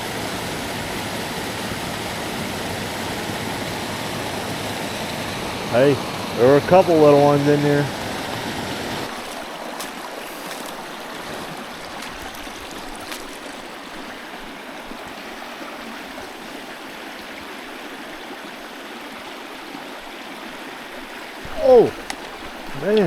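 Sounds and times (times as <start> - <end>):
stream water running over rocks: 0.0 - 23.0
faint clicks: 21.5 - 23.0.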